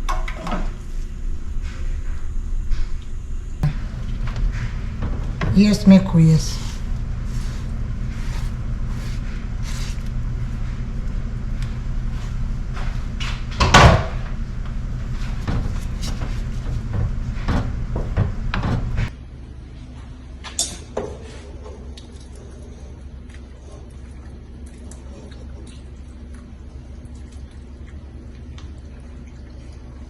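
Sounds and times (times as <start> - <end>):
steady low hum: 0.0 - 20.4
cookware and cupboards knocking: 15.2 - 19.1.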